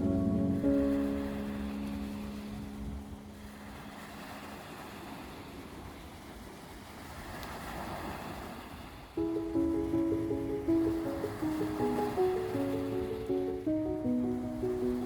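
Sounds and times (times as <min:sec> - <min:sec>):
song held notes: 0:00.0 - 0:03.5, 0:09.2 - 0:15.0
sea waves washing ashore: 0:00.0 - 0:15.0
wind rumbling on microphone: 0:00.0 - 0:15.0.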